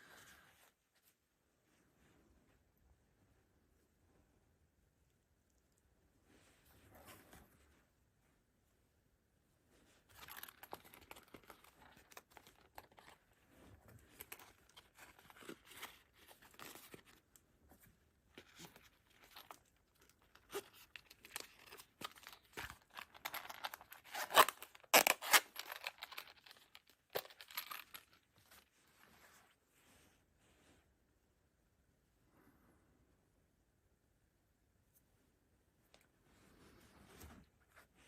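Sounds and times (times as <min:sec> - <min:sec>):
packaging rustling and tearing: 0:10.1 - 0:13.3, 0:14.0 - 0:17.2, 0:18.4 - 0:28.7.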